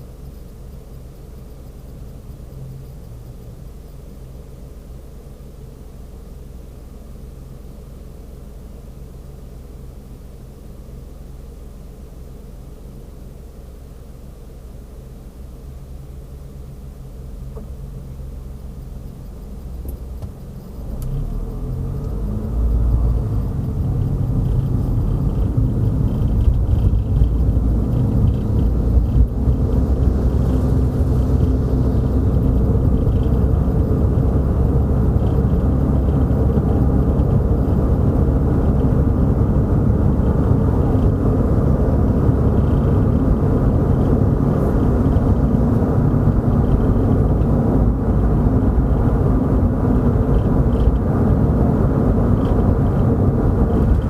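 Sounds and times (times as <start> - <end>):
car engine and tyres rumbling: 0.0 - 54.0.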